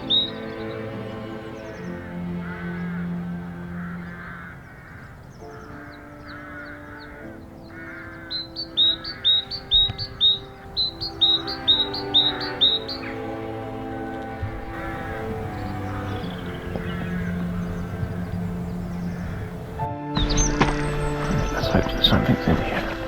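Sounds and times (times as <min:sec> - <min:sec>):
background music with held notes: 0:00.0 - 0:23.0
bird calling high sharp notes: 0:08.3 - 0:22.5.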